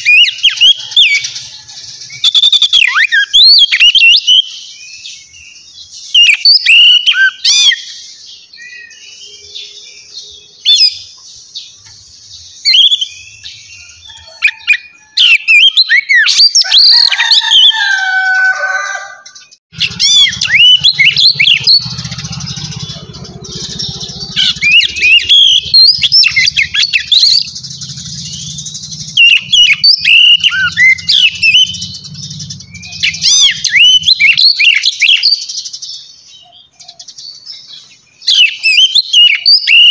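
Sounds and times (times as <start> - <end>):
birds chirping: 0.0 - 39.9
low hum: 19.8 - 34.6.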